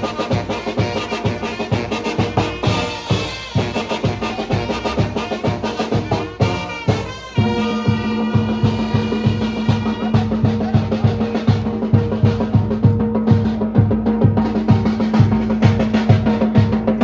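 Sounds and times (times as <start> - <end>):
brass band dance music: 0.0 - 17.0
steady drum beat: 0.0 - 17.0
brass held chord: 2.2 - 10.8.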